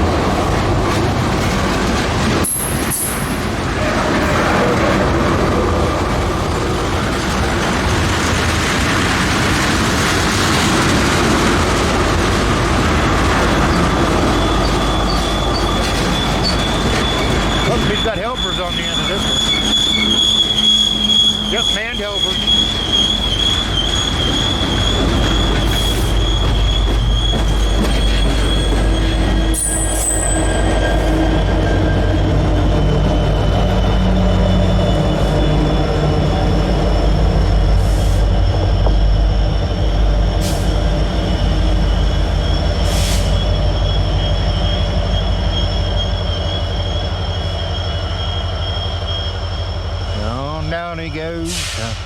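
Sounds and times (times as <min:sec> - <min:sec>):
train wheels rumbling on rail: 0:00.0 - 0:52.0
high wheel squeal: 0:02.4 - 0:08.0, 0:13.4 - 0:52.0.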